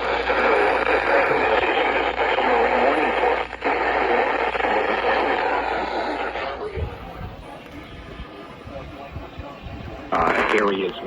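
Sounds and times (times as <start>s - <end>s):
static hiss: 0.0s - 6.9s
muffled voice on radio: 0.0s - 11.0s.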